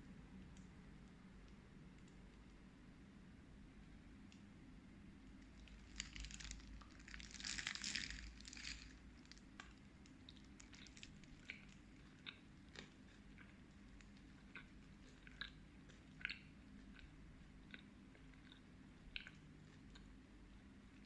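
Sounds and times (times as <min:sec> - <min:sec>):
person chewing crunchy food: 0:05.6 - 0:09.0, 0:09.6 - 0:20.2.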